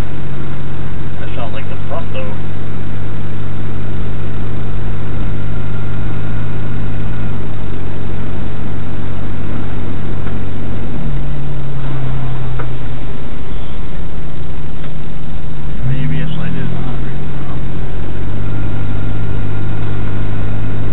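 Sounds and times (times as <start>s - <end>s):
vehicle engine drone: 0.0s - 20.9s.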